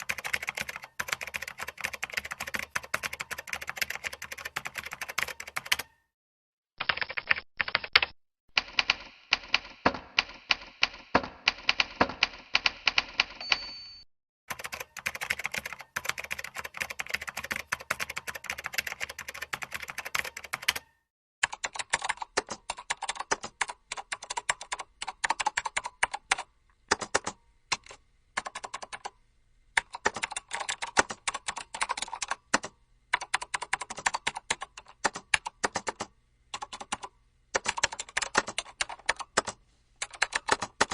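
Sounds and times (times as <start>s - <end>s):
keyboard typing clicks: 0.0s - 6.0s, 14.5s - 29.1s, 29.8s - 40.9s.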